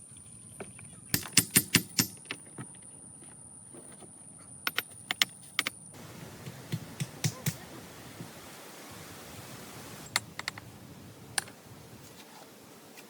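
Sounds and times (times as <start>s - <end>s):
sharp clicks and knocks: 1.1s - 2.5s, 10.1s - 10.7s.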